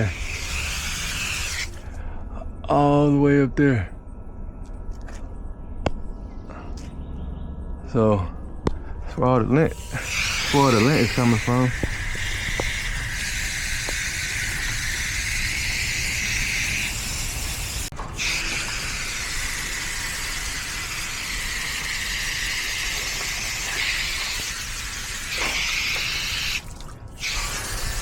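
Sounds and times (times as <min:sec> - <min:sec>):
hose nozzle spray hissing: 0:00.0 - 0:01.8, 0:09.7 - 0:28.0.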